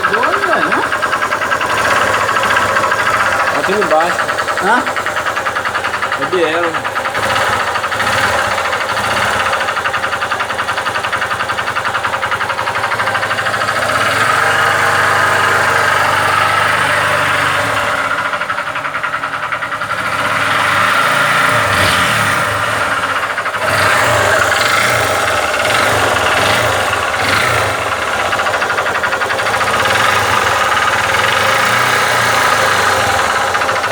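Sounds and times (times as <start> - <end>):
motorcycle engine with metallic knock: 0.0 - 33.9.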